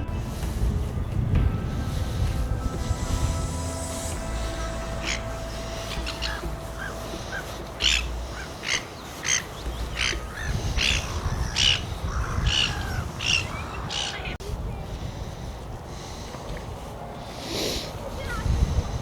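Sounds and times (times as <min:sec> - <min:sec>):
bird harsh high calls: 0:01.8 - 0:14.4.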